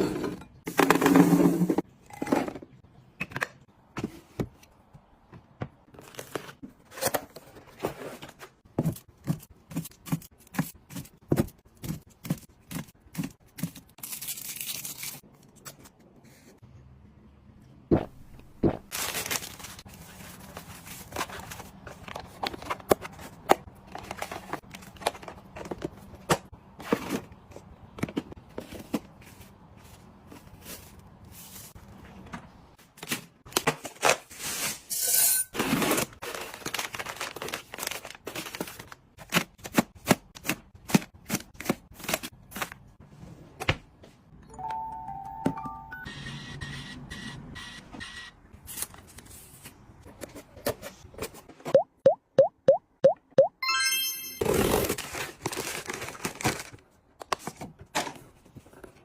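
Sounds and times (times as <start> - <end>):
packaging rustling and tearing: 18.9 - 23.2, 35.6 - 39.5, 54.4 - 56.8.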